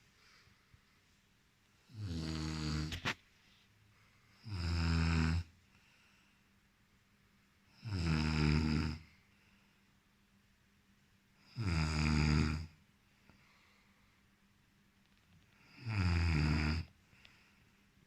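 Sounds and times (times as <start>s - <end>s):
man snoring: 1.9s - 3.0s, 4.4s - 5.5s, 7.8s - 9.1s, 11.4s - 12.8s, 15.7s - 16.9s.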